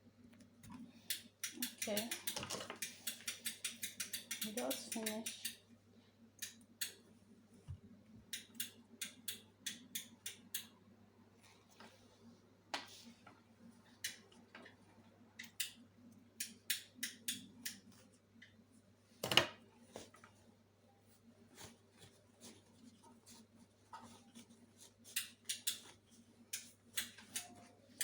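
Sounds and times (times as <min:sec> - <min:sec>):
sharp sewing clicks: 0:01.1 - 0:05.6.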